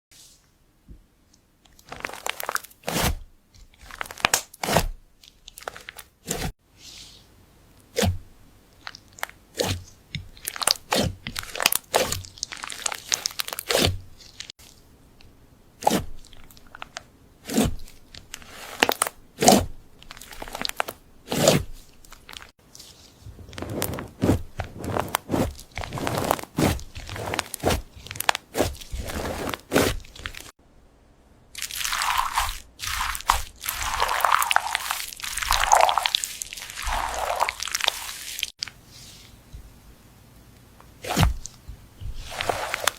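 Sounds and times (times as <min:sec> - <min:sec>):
crisp crunching and crackling: 0:01.8 - 0:02.8, 0:10.4 - 0:14.5, 0:20.0 - 0:21.0, 0:21.9 - 0:22.5, 0:23.2 - 0:30.5, 0:31.6 - 0:38.6, 0:42.2 - 0:42.9.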